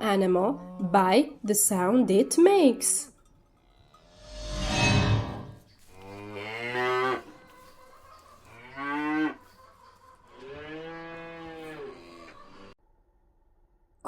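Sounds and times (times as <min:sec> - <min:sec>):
cow mooing: 0:06.0 - 0:07.3, 0:08.5 - 0:09.4, 0:10.3 - 0:12.7.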